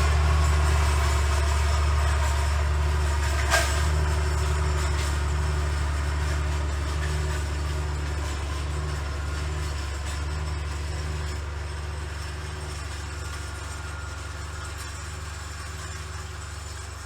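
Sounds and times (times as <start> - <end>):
tractor engine droning: 0.0 - 17.0.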